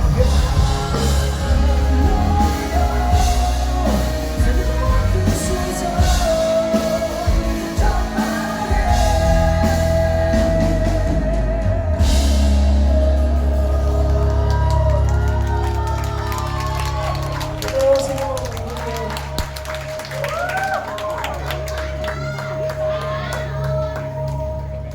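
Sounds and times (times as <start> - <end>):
drum kit: 0.0 - 22.9
bass guitar: 0.0 - 24.9.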